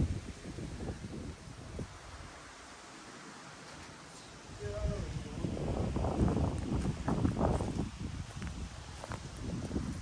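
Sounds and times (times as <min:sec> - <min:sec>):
wind buffeting microphone: 0:00.0 - 0:02.4, 0:04.6 - 0:10.0.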